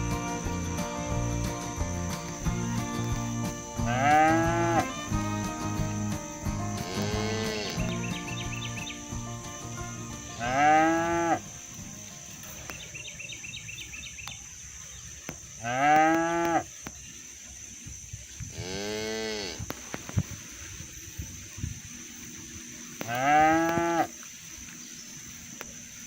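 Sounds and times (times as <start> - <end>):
high insect drone: 0.0 - 26.0
cattle mooing: 3.2 - 8.2, 10.4 - 11.4, 15.6 - 16.6, 18.6 - 19.6, 23.1 - 24.1.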